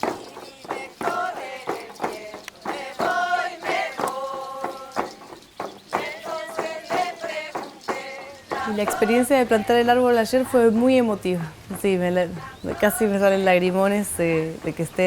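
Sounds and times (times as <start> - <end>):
voices singing together: 0.0 - 14.7
frame drums beating: 0.0 - 15.0.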